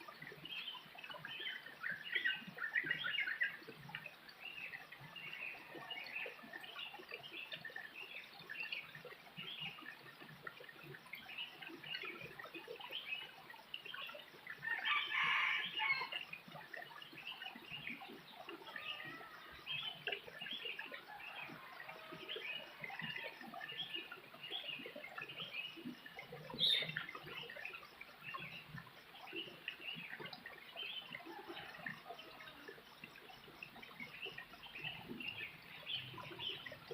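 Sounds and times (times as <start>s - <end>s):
small birds chirping: 23.6s - 31.2s.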